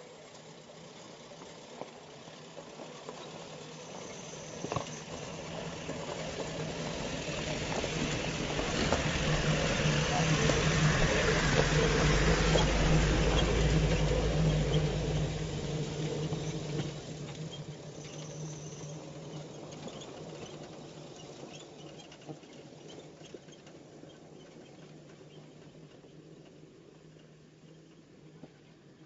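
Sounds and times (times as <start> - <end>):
vehicle engine running low: 1.8 - 21.6.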